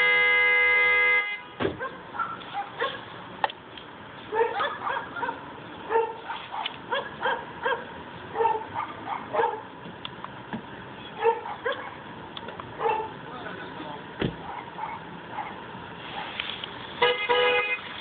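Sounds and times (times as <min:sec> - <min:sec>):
dog barking and yipping: 0:01.8 - 0:03.1, 0:04.3 - 0:09.7, 0:11.2 - 0:12.0, 0:12.8 - 0:13.2, 0:14.4 - 0:16.4.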